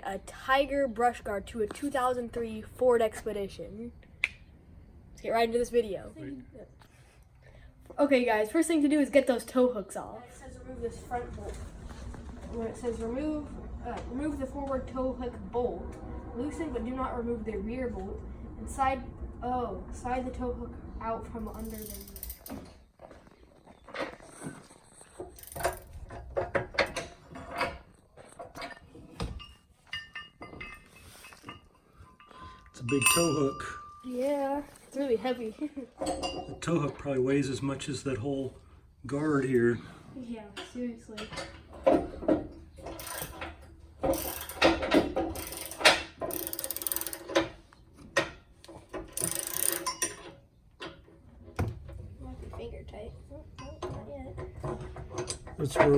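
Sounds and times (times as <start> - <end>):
ratchet wrench clicking: 21.5 - 22.5, 25.4 - 25.9, 44.1 - 44.8, 45.4 - 47.4, 49.1 - 50.2
metal clicks clanks and scrapes: 23.8 - 32.8, 40.5 - 55.9.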